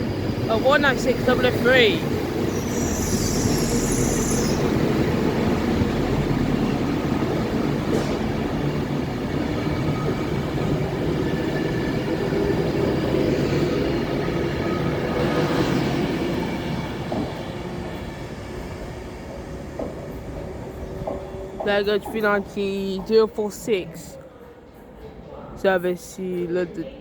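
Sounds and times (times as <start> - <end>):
diesel train engine rumble: 0.0 - 24.9.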